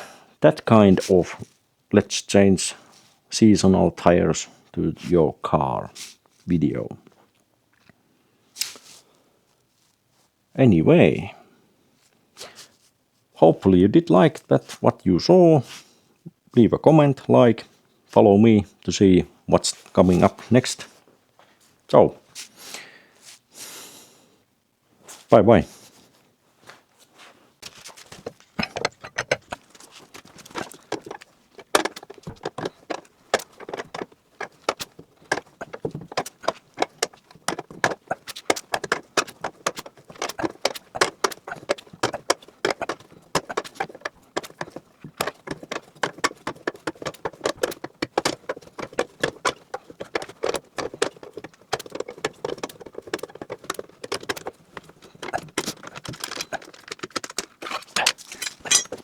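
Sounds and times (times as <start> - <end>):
metal tools clinking and rattling: 28.2 - 59.0.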